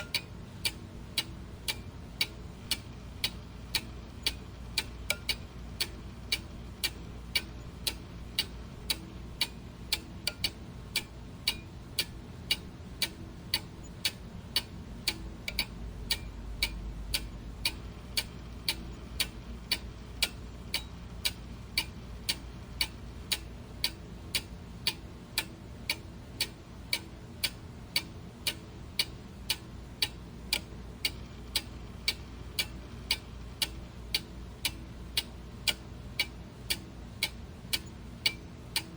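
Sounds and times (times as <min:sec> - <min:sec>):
clock ticking: 0:00.0 - 0:38.9.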